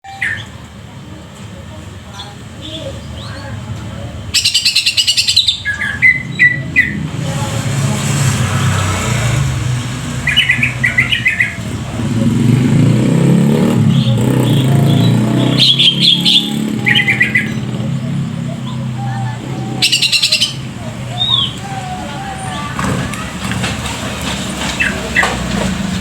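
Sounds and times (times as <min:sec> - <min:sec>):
bird chirping: 0:00.0 - 0:00.6, 0:04.3 - 0:07.4, 0:09.9 - 0:23.4
engine running: 0:05.5 - 0:26.0.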